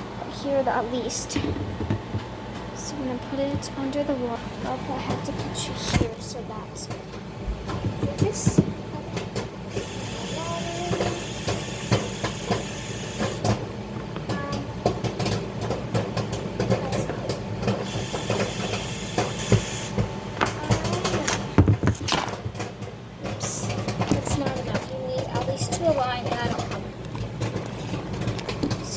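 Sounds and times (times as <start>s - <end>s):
microwave oven humming: 0.0s - 28.9s
popcorn popping: 6.8s - 28.9s
hiss: 9.8s - 13.4s, 17.9s - 20.0s.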